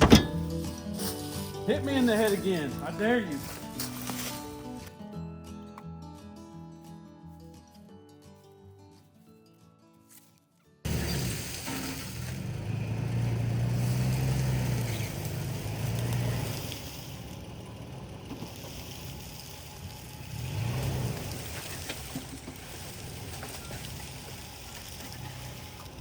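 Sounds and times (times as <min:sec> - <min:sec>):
vehicle engine running under load: 0:10.9 - 0:26.0.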